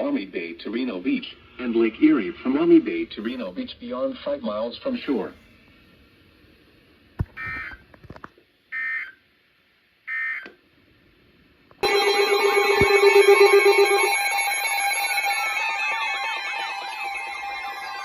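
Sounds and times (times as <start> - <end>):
layered electronic alarm tones: 11.8 - 18.0
low warbling tone: 11.8 - 18.0.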